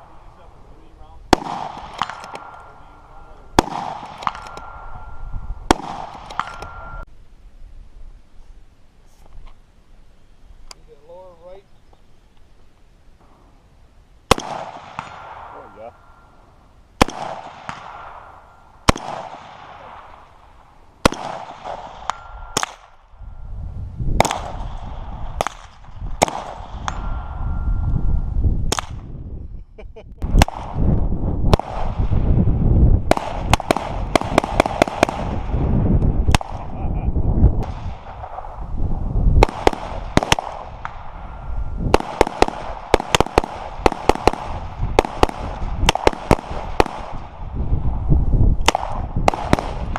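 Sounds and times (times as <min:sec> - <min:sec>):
low rumbling noise: 0:00.0 - 0:10.6, 0:13.1 - 0:49.9
rifle shots: 0:01.3 - 0:07.0, 0:14.3 - 0:16.2, 0:17.0 - 0:23.1, 0:24.2 - 0:27.4, 0:30.3 - 0:30.8, 0:31.5 - 0:32.1, 0:33.0 - 0:35.6, 0:36.2 - 0:36.7, 0:37.6 - 0:38.6, 0:39.4 - 0:47.5, 0:48.6 - 0:49.9
ringing of hit steel: 0:22.1 - 0:22.6.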